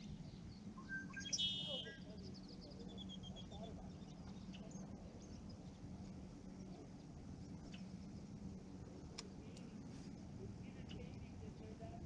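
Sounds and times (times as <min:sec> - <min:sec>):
bird chirps: 0:00.0 - 0:05.8
steady low hum: 0:00.0 - 0:12.0.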